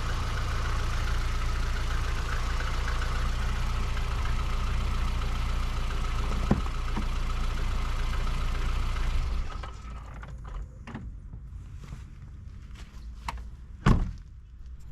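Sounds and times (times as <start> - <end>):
car engine spinning a wheel: 0.0 - 11.0.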